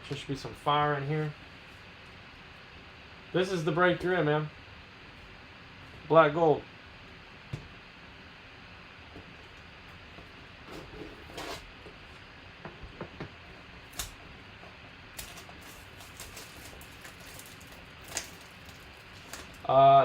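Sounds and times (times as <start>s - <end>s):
packaging rustling: 15.2s - 19.7s.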